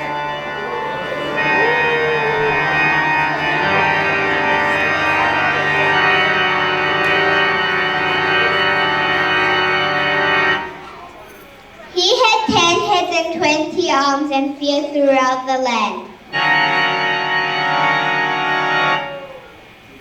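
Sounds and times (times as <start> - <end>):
organ-like keyboard chords: 0.0 - 11.3, 16.2 - 20.0.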